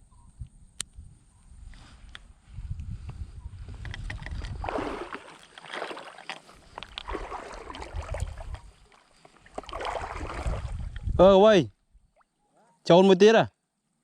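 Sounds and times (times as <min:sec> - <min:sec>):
wind rumble on microphone: 0:00.0 - 0:05.2, 0:06.9 - 0:08.8, 0:09.7 - 0:12.1
water splashing and sloshing: 0:04.0 - 0:11.2.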